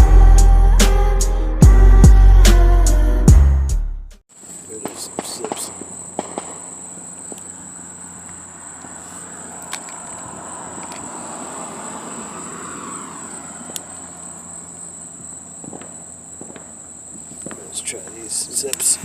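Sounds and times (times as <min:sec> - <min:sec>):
high-pitched insect drone: 0:00.0 - 0:03.2, 0:04.3 - 0:19.0
distant vehicle passing: 0:04.8 - 0:18.6.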